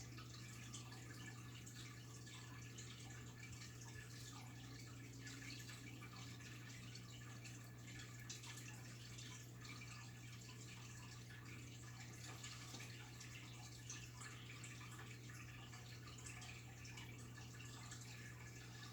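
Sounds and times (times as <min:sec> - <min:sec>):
aquarium water trickling: 0:00.0 - 0:18.9
filter pump humming: 0:00.0 - 0:18.9.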